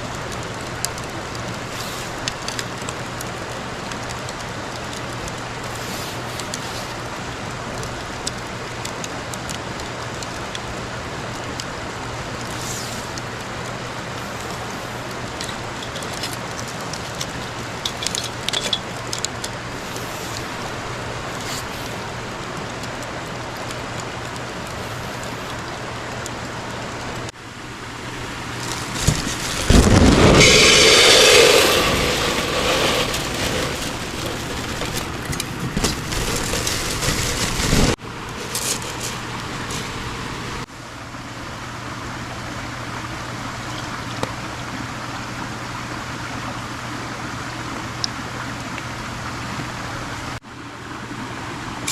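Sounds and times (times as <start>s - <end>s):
campfire crackling and popping: 0.0s - 40.7s
steady hiss: 0.0s - 40.8s.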